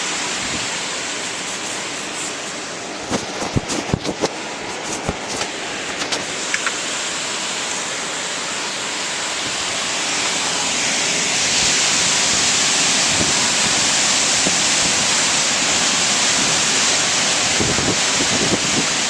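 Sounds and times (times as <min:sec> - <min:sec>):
heavy rain hiss: 0:00.0 - 0:19.0.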